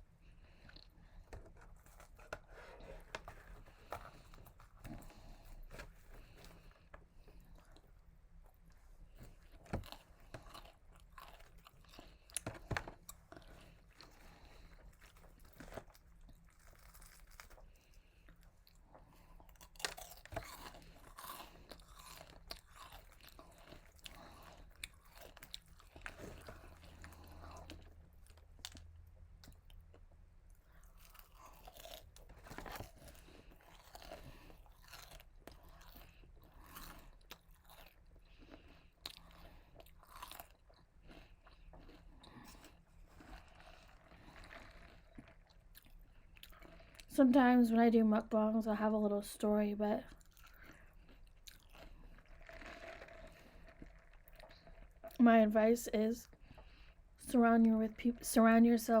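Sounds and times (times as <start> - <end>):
chewing: 0.3 - 47.1, 50.0 - 55.2
crisp crunching bites: 14.0 - 17.9, 19.5 - 28.8, 30.9 - 38.5, 39.1 - 46.7, 50.2 - 55.0.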